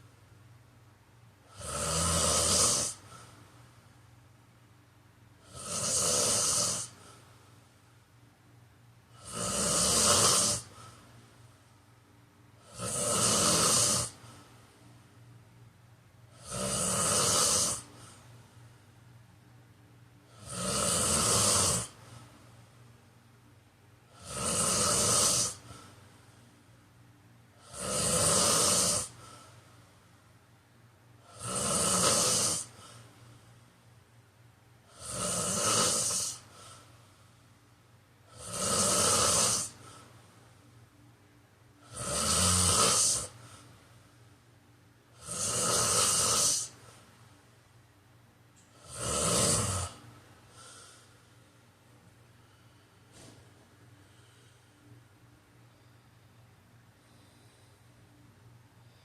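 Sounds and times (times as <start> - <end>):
quiet breathing: 0.0 - 16.6, 17.2 - 20.5, 21.2 - 27.8, 28.6 - 49.0, 49.7 - 59.0
man snoring: 1.5 - 3.2, 5.4 - 7.2, 9.1 - 11.0, 12.6 - 14.3, 16.3 - 18.2, 20.3 - 22.1, 24.1 - 25.9, 27.6 - 29.4, 31.2 - 33.0, 34.9 - 36.8, 38.3 - 40.0, 41.8 - 43.6, 45.1 - 47.0, 48.7 - 51.0.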